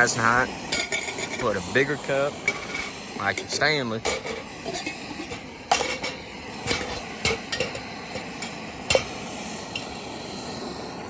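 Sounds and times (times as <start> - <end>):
stove hissing gas: 0.0 - 11.0
metal cup clinking on grate: 0.7 - 1.6, 2.4 - 9.9.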